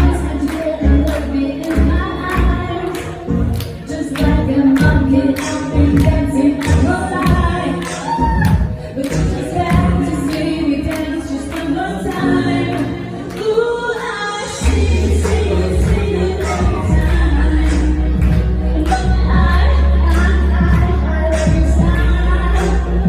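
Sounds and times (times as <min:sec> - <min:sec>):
person singing pop song: 0:00.0 - 0:23.0
live band playing: 0:14.3 - 0:23.0.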